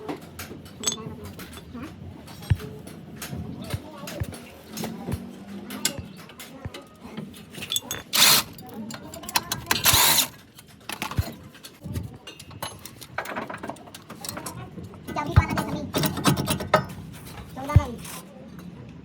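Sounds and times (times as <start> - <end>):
tool clicks and knocks: 0.0 - 6.9.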